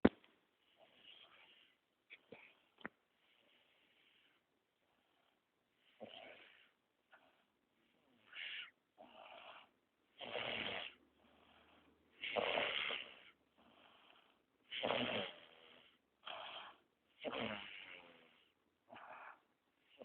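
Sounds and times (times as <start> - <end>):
soft breaths: 0.2 - 20.0
person snoring: 8.2 - 19.4.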